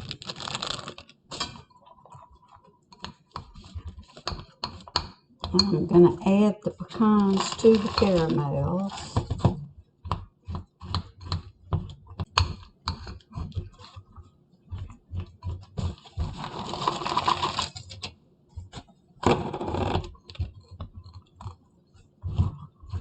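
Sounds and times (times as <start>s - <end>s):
scraping and rattling: 15.6s - 18.1s.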